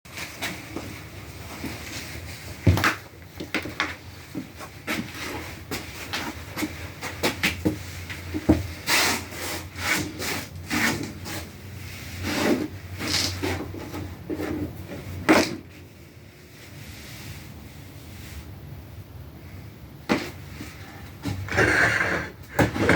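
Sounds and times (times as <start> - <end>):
wood scraped by hand: 21.2 - 22.9.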